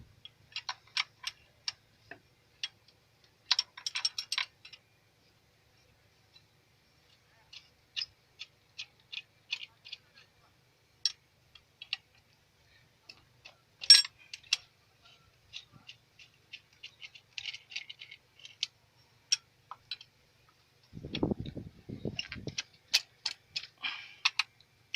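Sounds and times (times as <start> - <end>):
metallic clicks from hand tools: 21.1 - 24.6.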